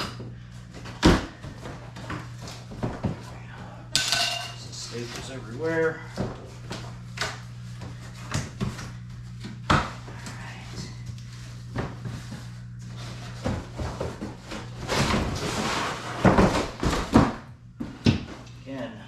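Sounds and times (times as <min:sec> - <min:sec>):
steady low hum: 0:00.0 - 0:19.0
cardboard rustling and scraping: 0:11.4 - 0:18.0.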